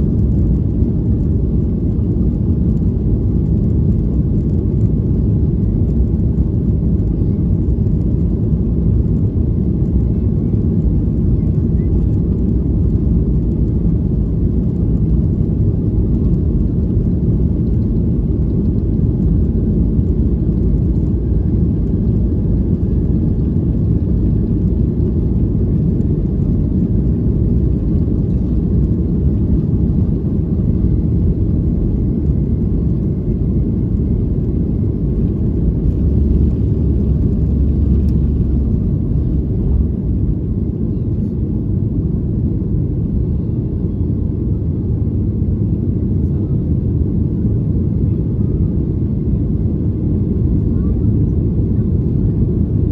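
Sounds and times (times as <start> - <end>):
loud low jet engine rumble: 0.0 - 52.9.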